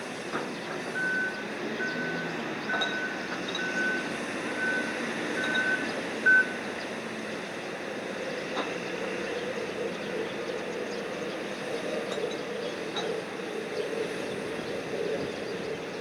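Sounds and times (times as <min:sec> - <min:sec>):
machinery drone: 0:00.0 - 0:16.0
machinery warning beeper: 0:01.0 - 0:06.6.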